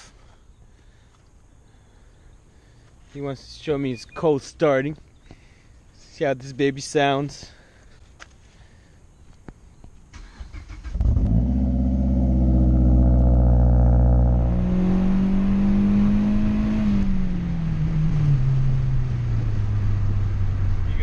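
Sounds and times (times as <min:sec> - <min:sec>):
car engine starting and idling: 0:10.1 - 0:16.2.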